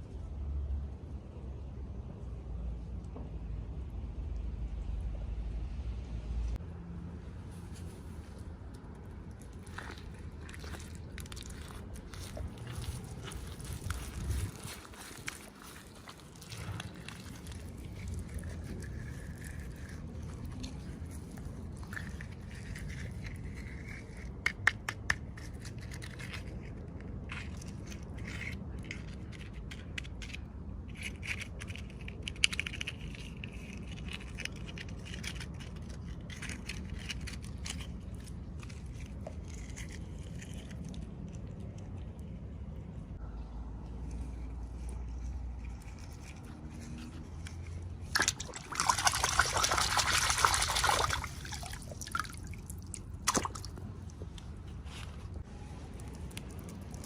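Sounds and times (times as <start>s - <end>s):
wrapping scraping and crackling: 7.5s - 24.4s, 25.4s - 42.6s, 49.4s - 57.0s.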